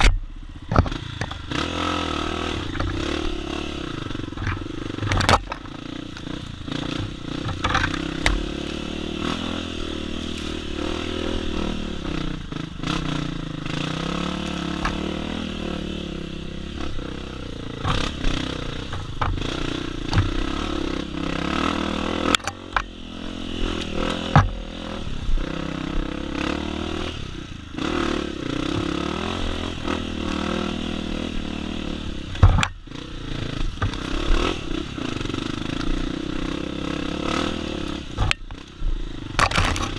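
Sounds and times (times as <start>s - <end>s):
dirt bike engine revving: 0.7s - 39.9s
sharp knocks and rattles: 4.3s - 8.8s, 17.7s - 20.8s, 32.4s - 32.8s.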